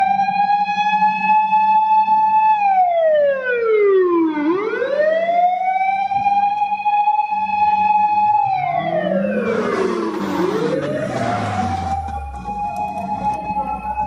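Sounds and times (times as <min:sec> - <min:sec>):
siren-like tone: 0:07.4 - 0:14.0.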